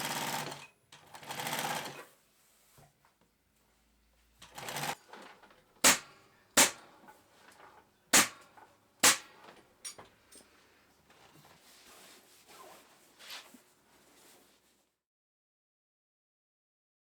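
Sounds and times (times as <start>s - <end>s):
staple gun firing: 5.8s - 6.8s, 8.2s - 8.4s, 9.0s - 9.3s
fabric rustling: 10.5s - 14.9s.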